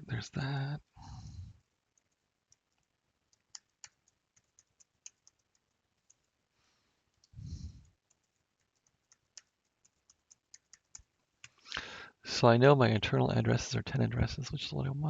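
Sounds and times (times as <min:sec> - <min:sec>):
keyboard and mouse clicks: 0:02.0 - 0:06.3, 0:08.0 - 0:11.6.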